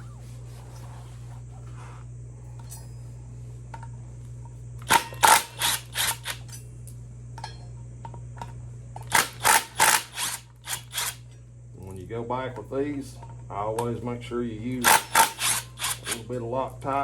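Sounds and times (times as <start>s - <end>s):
cordless impact gun bursts: 4.8s - 6.4s, 9.0s - 11.2s, 14.8s - 16.3s.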